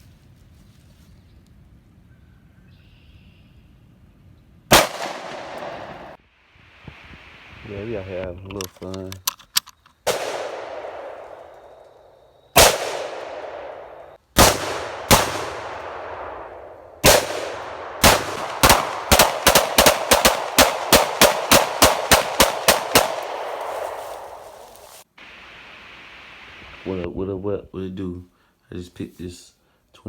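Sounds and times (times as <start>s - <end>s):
gunshots with long echo: 4.7s - 6.2s, 10.1s - 11.8s, 12.6s - 24.8s
rapid gunfire: 17.0s - 23.6s.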